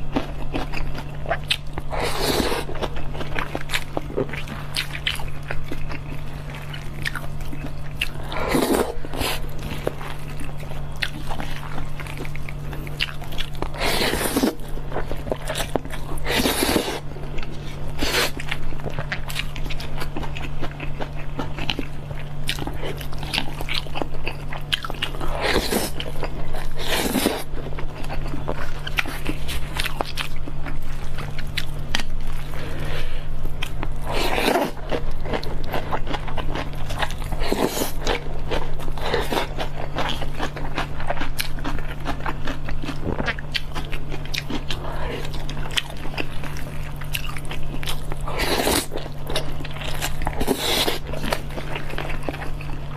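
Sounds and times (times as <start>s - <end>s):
close chewing and biting: 0.0s - 52.9s
steady low hum: 0.0s - 52.9s.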